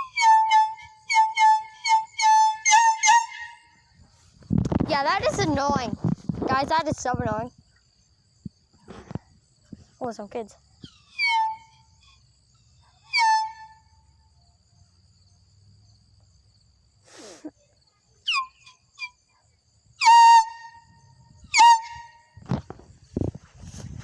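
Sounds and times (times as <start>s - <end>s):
air horn blasts: 20.0s - 22.4s.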